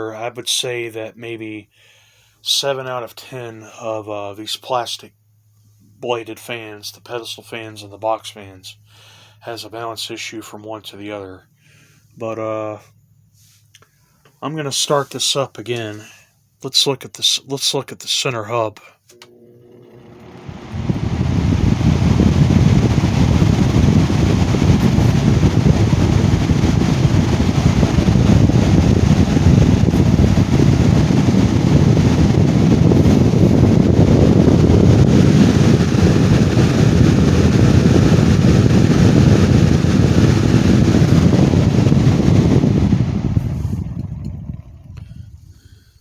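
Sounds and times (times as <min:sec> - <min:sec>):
box fan rushing air: 0:19.2 - 0:45.8.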